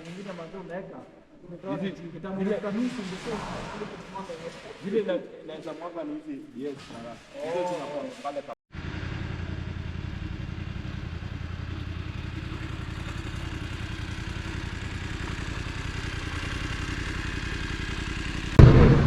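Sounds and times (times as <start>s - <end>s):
motorcycle engine idling: 8.8s - 19.0s.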